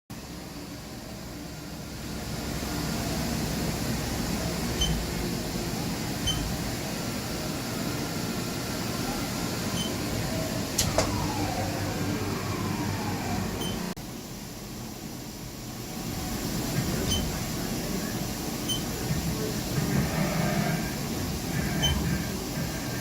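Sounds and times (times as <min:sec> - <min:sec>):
machine mechanical hum: 0:00.1 - 0:23.0
falling machine whines: 0:08.0 - 0:14.0.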